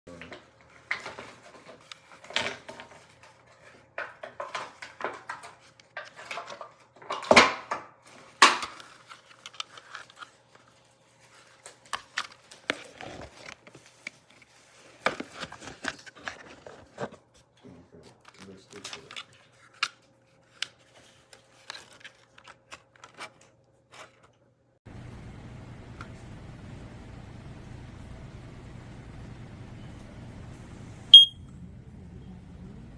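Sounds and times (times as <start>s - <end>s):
handling clicks and crinkles: 8.0s - 25.1s.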